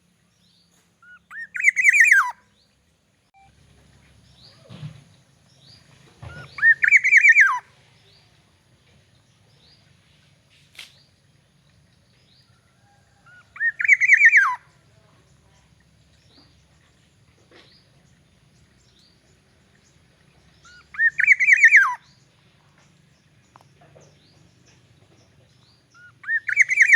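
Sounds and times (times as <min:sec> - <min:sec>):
oriole whistled calls: 0:01.0 - 0:02.4, 0:06.2 - 0:07.7, 0:13.1 - 0:14.7, 0:20.6 - 0:22.2, 0:25.9 - 0:26.9.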